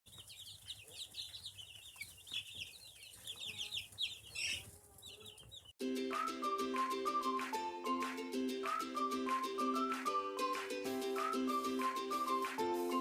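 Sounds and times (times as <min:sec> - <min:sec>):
chicks cheeping: 0:00.1 - 0:05.8
music with plucked notes: 0:05.8 - 0:13.0.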